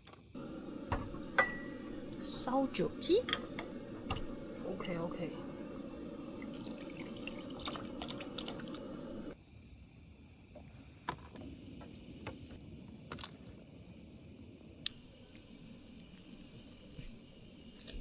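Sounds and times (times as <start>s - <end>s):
liquid cooking in a pot: 0.4s - 9.4s, 14.9s - 18.0s
clinks: 0.9s - 2.2s.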